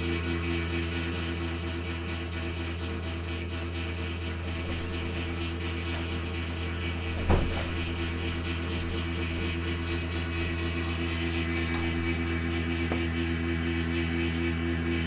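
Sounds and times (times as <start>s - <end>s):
water heater humming: 3.8s - 13.6s.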